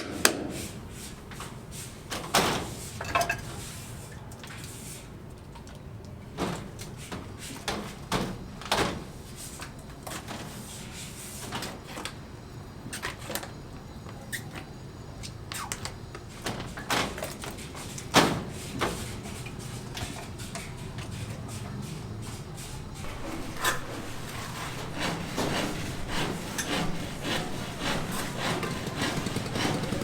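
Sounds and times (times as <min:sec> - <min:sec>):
knocks and clatters: 0:23.0 - 0:30.0.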